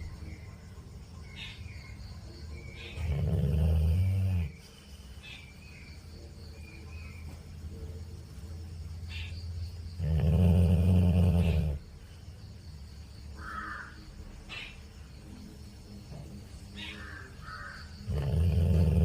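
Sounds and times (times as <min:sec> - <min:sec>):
dog snoring: 0:02.9 - 0:04.7, 0:10.0 - 0:11.9, 0:18.0 - 0:19.0.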